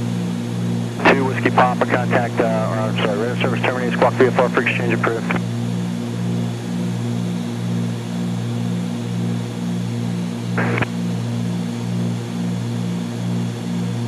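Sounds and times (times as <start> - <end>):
propeller engines droning: 0.0 - 14.0
short crackle: 10.6 - 10.9.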